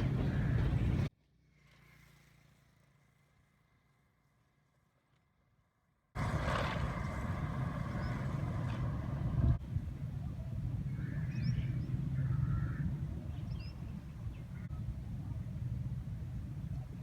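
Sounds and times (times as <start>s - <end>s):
locomotive engine rumbling: 0.0s - 1.1s, 6.2s - 15.2s.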